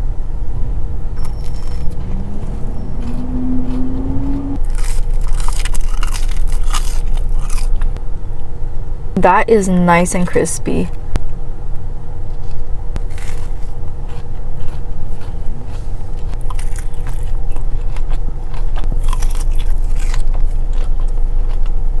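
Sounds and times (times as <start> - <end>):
low engine rumble: 0.0 - 22.0
crunching and chewing: 1.3 - 8.0, 12.4 - 22.0.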